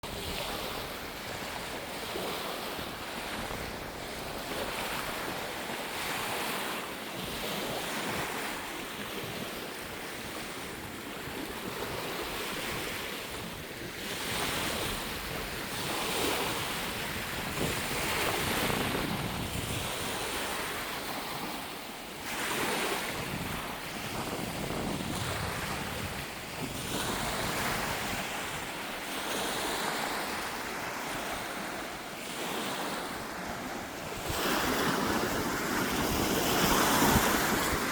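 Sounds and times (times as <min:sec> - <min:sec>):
sea waves washing in: 0:00.0 - 0:37.9
wind buffeting microphone: 0:09.2 - 0:37.9.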